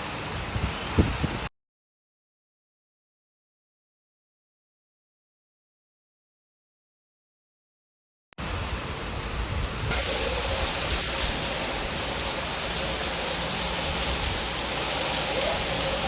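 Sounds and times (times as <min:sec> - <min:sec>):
rain falling: 0:00.0 - 0:01.5, 0:08.4 - 0:16.0.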